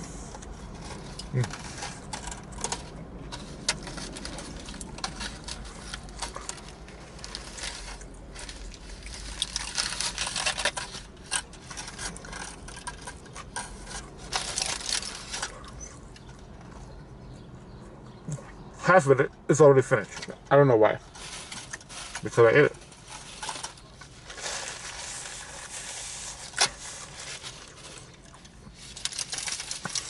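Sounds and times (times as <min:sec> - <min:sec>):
scraping and rustling handling: 0:00.0 - 0:18.3, 0:19.9 - 0:30.0
wet chewing: 0:00.3 - 0:18.5.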